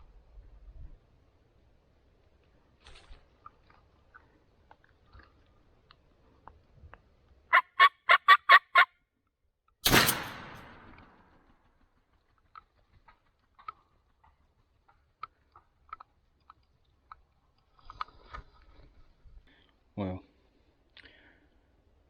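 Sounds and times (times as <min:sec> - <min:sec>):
wild turkey call: 0:07.5 - 0:08.9
shotgun blast echoing: 0:09.8 - 0:11.5.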